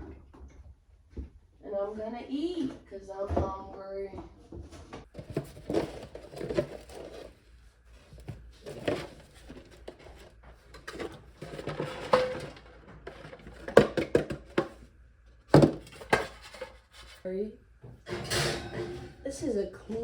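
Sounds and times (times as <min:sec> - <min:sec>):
dishes knocking and clinking: 0:10.8 - 0:14.8, 0:17.9 - 0:19.3.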